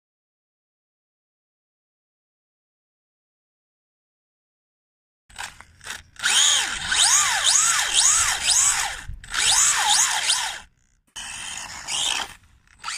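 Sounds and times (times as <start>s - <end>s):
small electric motor revving: 5.3s - 12.9s.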